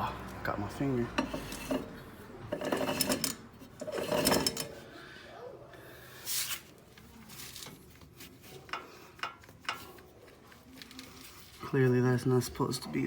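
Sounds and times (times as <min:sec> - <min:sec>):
metal parts rubbing and clunking: 0:01.1 - 0:04.8.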